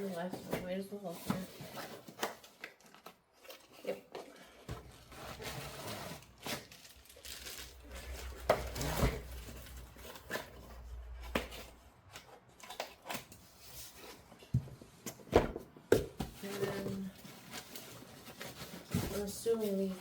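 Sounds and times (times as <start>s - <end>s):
wrapping crinkling: 1.8s - 11.1s.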